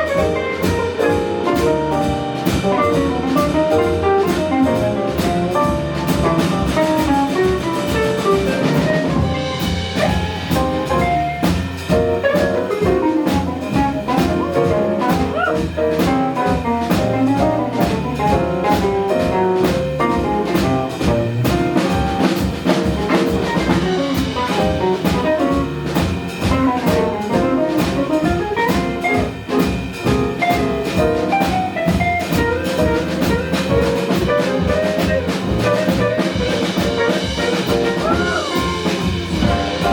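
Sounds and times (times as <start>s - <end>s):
jazz rhythm section: 0.0s - 39.9s
saxophone melody: 35.6s - 39.9s.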